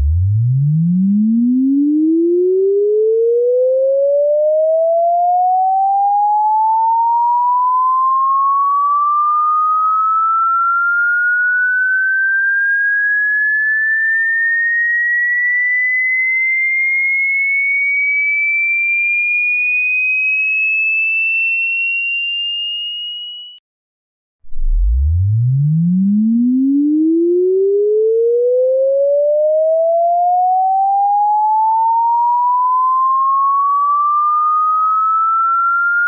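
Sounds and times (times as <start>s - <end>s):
electronic sine tone sweeping upward: 0.0s - 14.9s, 24.4s - 36.0s.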